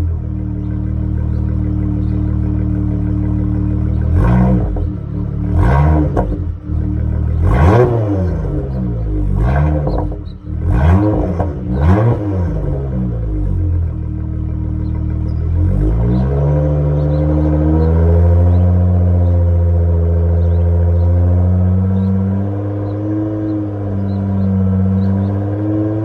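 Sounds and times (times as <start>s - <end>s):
car exhaust idling and revving: 0.0s - 26.0s
exhaust crackle: 0.0s - 26.0s.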